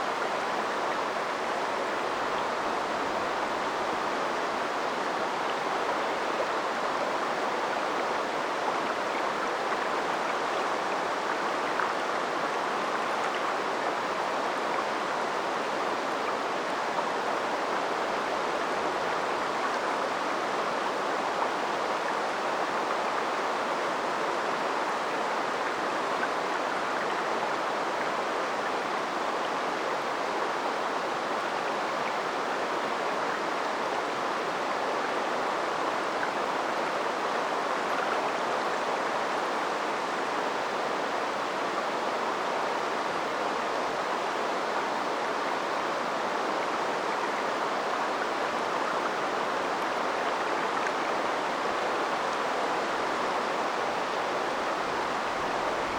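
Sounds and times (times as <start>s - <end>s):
river water rushing: 0.0s - 55.9s.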